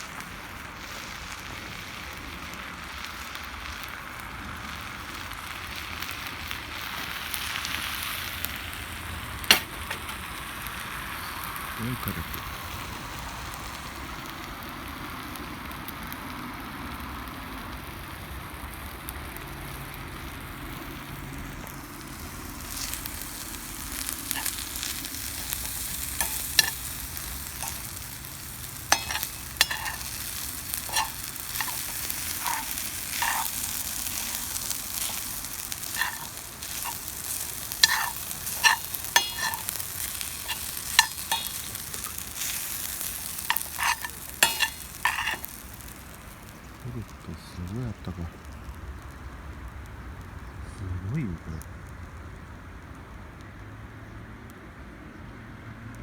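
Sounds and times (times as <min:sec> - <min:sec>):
food sizzling in a frying pan: 0:00.0 - 0:50.5
utensil scraping a pan: 0:22.7 - 0:45.8.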